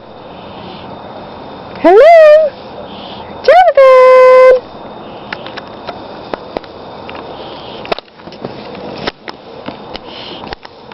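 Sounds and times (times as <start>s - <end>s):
steady hiss: 0.0s - 10.9s
child breathing and sniffing: 9.9s - 10.6s.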